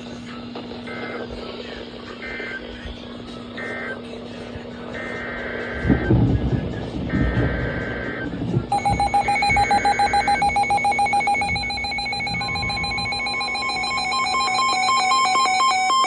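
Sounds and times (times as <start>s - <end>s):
rapidly pulsing electronic beep: 7.1s - 16.0s
electronic tones stepping pitches: 8.7s - 16.0s
warbling two-tone digital code: 8.7s - 16.0s.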